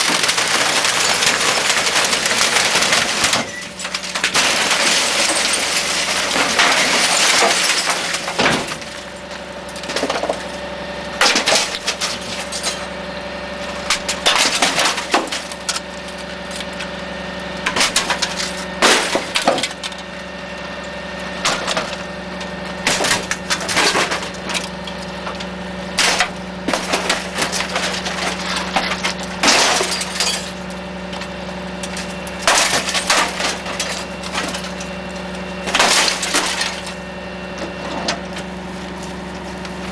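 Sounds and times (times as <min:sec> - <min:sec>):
glass cracking and shattering: 0:00.0 - 0:10.4, 0:26.0 - 0:30.6, 0:31.9 - 0:34.9, 0:35.7 - 0:37.0
garbage truck mechanical hum: 0:00.0 - 0:39.9.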